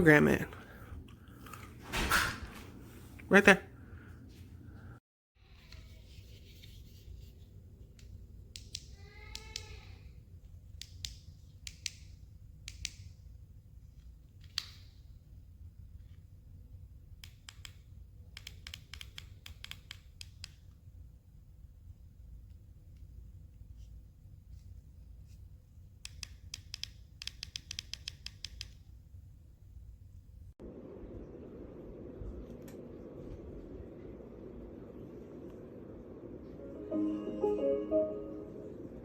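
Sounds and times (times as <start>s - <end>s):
steady low hum: 29.3s - 39.0s.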